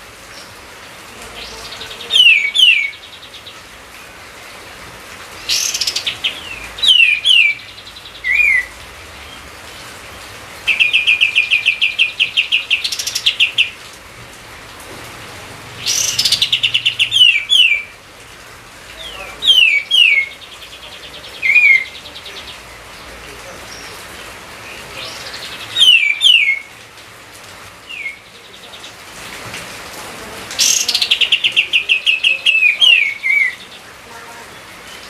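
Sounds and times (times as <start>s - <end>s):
songbird singing trills and whistles: 1.4s - 3.6s, 5.4s - 8.8s, 10.7s - 13.8s, 15.8s - 17.9s, 19.0s - 22.6s, 24.7s - 26.7s, 27.9s - 28.9s, 30.6s - 33.8s.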